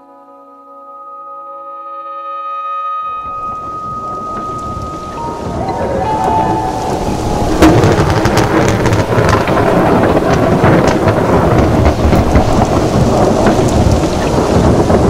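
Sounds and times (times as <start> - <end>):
heavy rain pattering: 3.2 - 15.0
low thunder rumble: 3.2 - 15.0.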